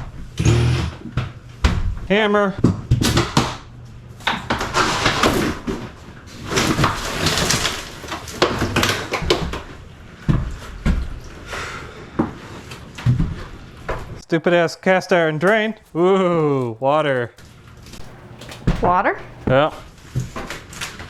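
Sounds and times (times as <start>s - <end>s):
debris scraping and clattering: 4.5s - 9.7s, 15.4s - 21.0s
hand hammer blows: 15.4s - 17.4s, 18.0s - 19.8s.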